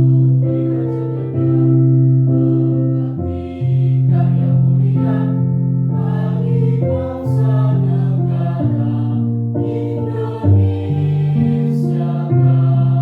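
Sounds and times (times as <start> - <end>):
children's choir singing: 0.0 - 1.8, 2.4 - 13.0.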